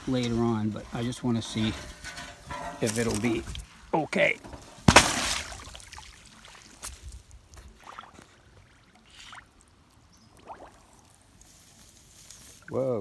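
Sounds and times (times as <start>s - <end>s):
pond water sloshing and gurgling: 4.6s - 12.0s
small water splashes: 4.8s - 11.8s.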